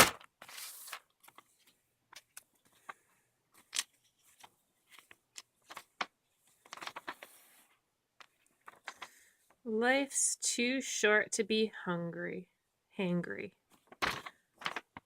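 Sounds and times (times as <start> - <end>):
paper rustling: 0.0 - 9.3, 13.7 - 15.0.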